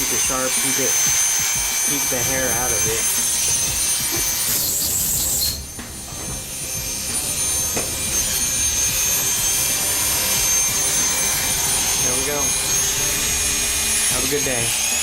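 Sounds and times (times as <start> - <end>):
hair clipper motor whining: 0.0 - 15.0.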